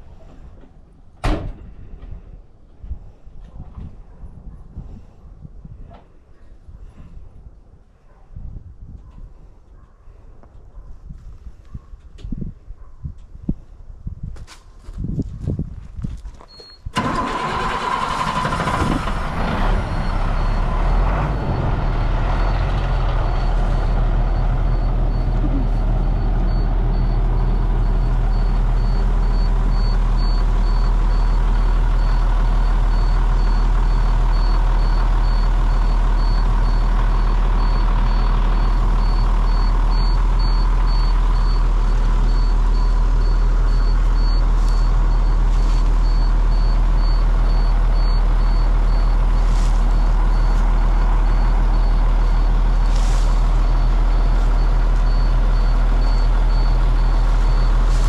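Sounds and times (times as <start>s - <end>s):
vehicle engine starting and idling: 16.9s - 58.0s
high-pitched warning beep: 42.3s - 49.1s.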